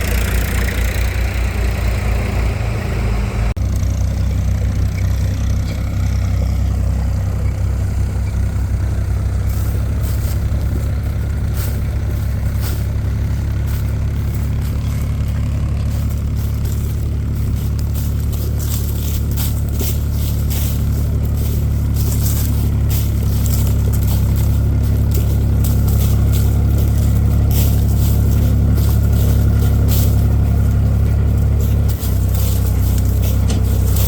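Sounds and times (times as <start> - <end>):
heavy diesel engine running: 0.0 - 34.0
clicking and scraping rattles: 9.2 - 34.0.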